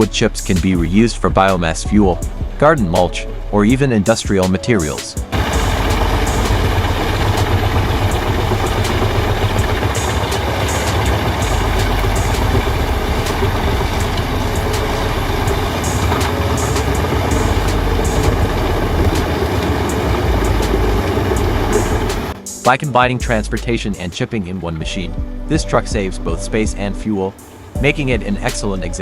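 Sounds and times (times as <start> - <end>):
sharp ticks: 4.8 - 22.8
wood chipper diesel rumble: 5.3 - 22.4.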